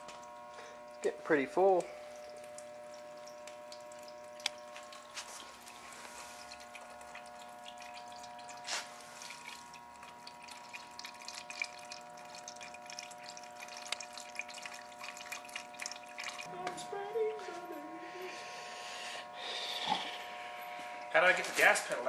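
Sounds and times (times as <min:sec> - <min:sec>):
fluid dripping into container: 0:00.0 - 0:16.5
faint steady hum: 0:00.0 - 0:22.0
liquid splash: 0:02.2 - 0:16.5.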